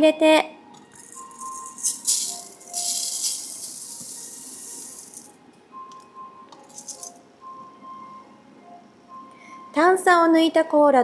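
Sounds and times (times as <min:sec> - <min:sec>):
rice poured into metal pot: 0:01.0 - 0:05.3.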